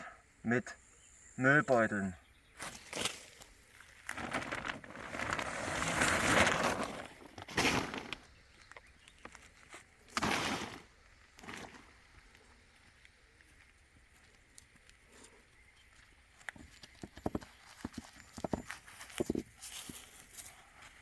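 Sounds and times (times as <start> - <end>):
plastic bags rustling: 3.7 - 8.6, 10.1 - 12.0.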